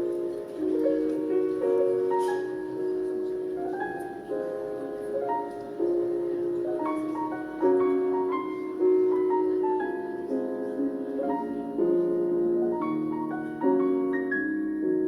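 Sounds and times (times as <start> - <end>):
slow piano melody: 0.0 - 15.0.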